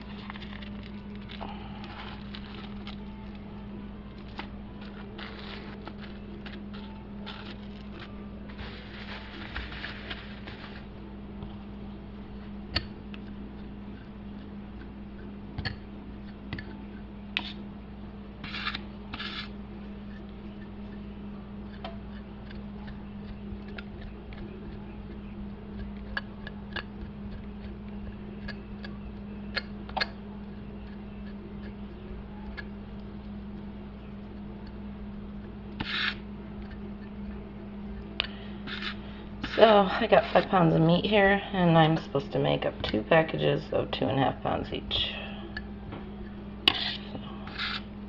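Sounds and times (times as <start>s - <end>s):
steady low hum: 0.0s - 48.0s
knife scraping raw meat: 18.4s - 19.6s, 35.8s - 36.2s, 38.6s - 40.7s, 46.7s - 47.9s.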